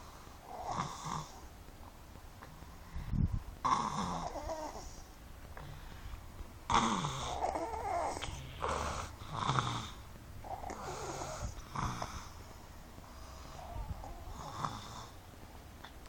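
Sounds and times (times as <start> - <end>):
person snoring: 6.7 - 12.4, 13.1 - 15.2.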